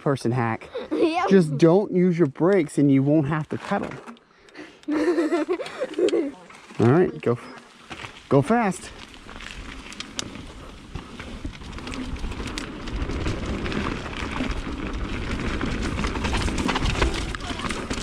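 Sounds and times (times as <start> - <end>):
bike tyres crackling on dirt: 5.0 - 18.0.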